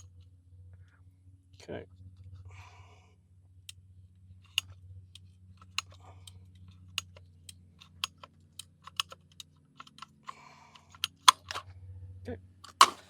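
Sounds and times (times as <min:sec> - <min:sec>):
pipe cutter clicking: 0:11.0 - 0:11.6, 0:12.7 - 0:13.0.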